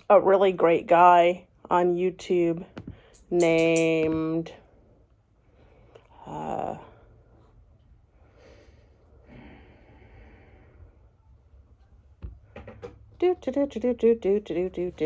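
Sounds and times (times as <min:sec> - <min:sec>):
faint breathing: 0:05.4 - 0:11.2.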